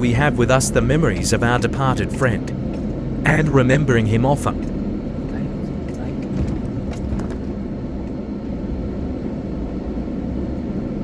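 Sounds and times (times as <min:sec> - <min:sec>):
vehicle engine rumble: 0:00.0 - 0:11.0.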